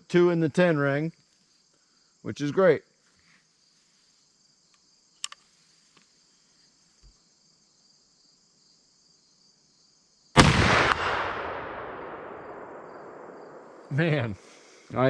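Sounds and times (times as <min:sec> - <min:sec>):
crickets chirring: 0:00.0 - 0:15.0
sharp click: 0:05.2 - 0:05.4
muzzleloader gunshot: 0:10.4 - 0:14.0.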